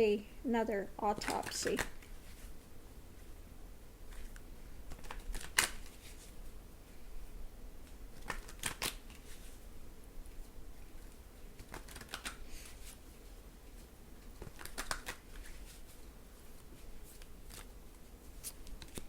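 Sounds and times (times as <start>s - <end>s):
cards being shuffled: 1.1s - 2.5s, 4.1s - 6.4s, 7.8s - 9.6s, 10.3s - 13.0s, 13.6s - 19.0s.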